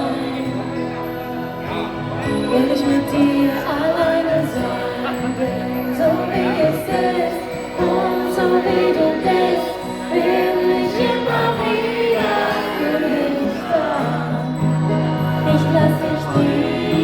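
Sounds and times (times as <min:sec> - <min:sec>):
pop song with vocals: 0:00.0 - 0:17.0.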